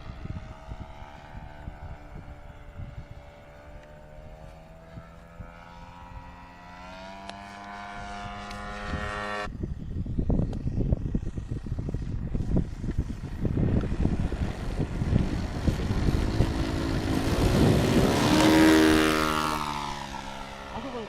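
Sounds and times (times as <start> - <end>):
model airplane engine buzzing: 0.0 - 21.0
loud irregular low rumbling: 9.4 - 21.0.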